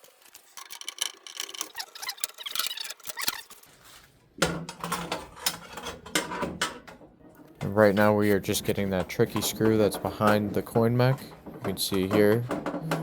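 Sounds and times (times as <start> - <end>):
screwdriver clicking and scraping metal: 0.0 - 3.7.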